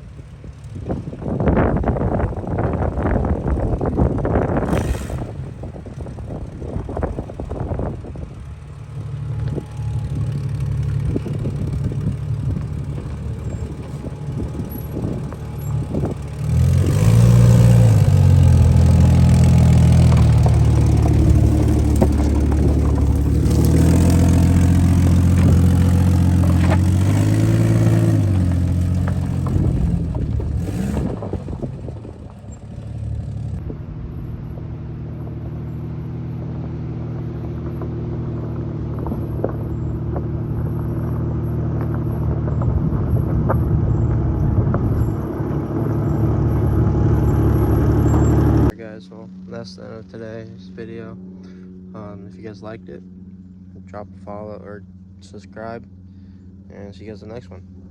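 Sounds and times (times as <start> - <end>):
car engine revving off-road: 0.0 - 57.9.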